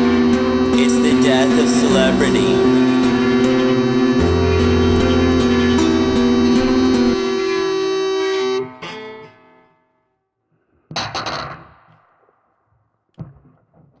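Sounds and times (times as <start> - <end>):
plucked guitar chords: 0.0 - 9.8.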